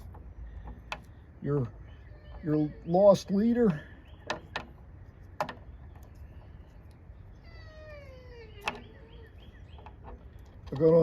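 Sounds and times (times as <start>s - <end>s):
dog whining: 1.9s - 3.0s, 7.3s - 9.6s.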